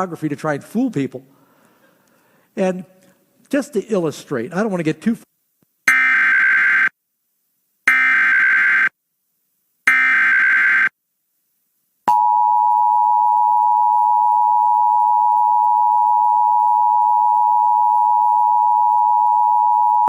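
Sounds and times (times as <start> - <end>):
loud steady attention tone: 5.9 - 7.0, 7.9 - 9.0, 9.8 - 11.0, 12.1 - 20.0.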